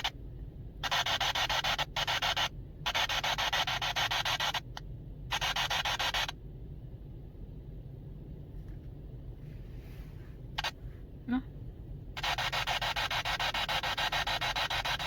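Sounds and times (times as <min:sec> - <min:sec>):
electronic static bursts: 0:00.8 - 0:04.7, 0:05.3 - 0:06.3, 0:10.6 - 0:10.8, 0:12.2 - 0:15.0.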